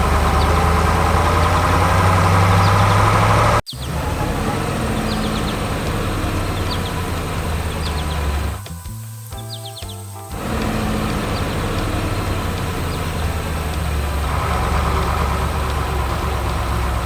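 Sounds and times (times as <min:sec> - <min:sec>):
heavy machinery engine idling: 0:00.0 - 0:08.6, 0:10.3 - 0:17.0
short bird chirps: 0:04.9 - 0:08.5, 0:09.4 - 0:10.2.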